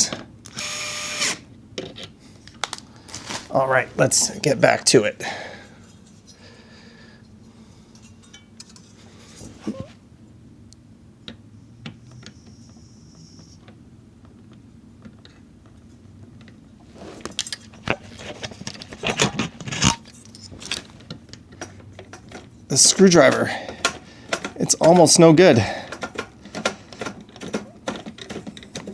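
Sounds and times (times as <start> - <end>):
screwdriver screwing down hardware: 0.5 - 1.4.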